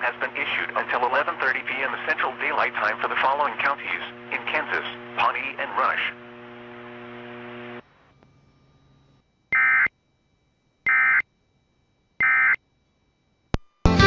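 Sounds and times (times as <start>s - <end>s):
steady hum: 0.0s - 13.8s
buzzy digital data bursts: 9.5s - 9.9s, 10.9s - 11.2s.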